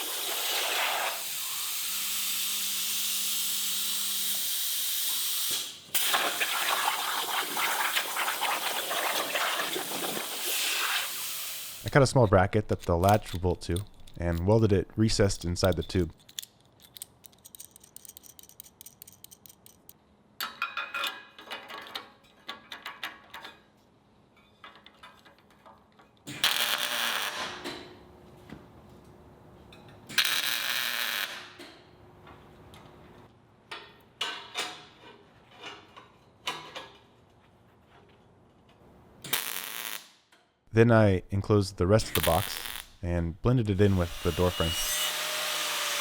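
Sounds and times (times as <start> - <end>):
metal parts clicking and clattering: 11.9 - 23.6.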